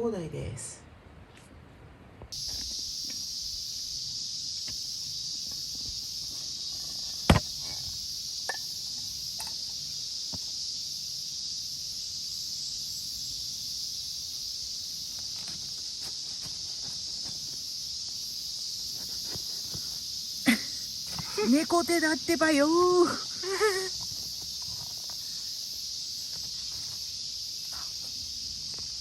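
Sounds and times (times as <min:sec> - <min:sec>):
cicadas droning: 0:02.3 - 0:29.0
sharp knock: 0:07.3 - 0:07.5.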